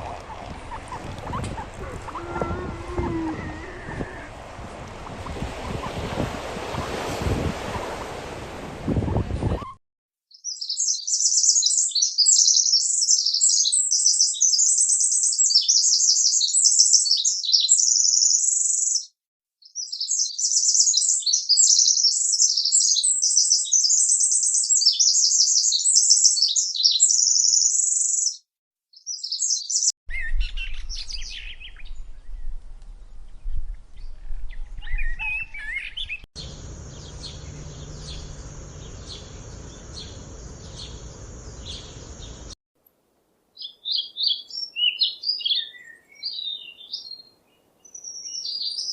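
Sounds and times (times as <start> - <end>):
songbird twittering: 0.0 - 8.0, 10.4 - 19.0, 34.2 - 42.6, 43.6 - 48.9
low hum: 36.4 - 42.6.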